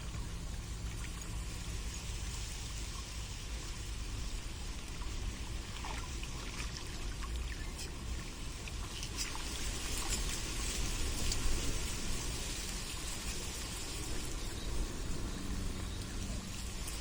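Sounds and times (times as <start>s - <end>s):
water trickling: 0.0s - 17.0s
low rumble: 10.5s - 17.0s.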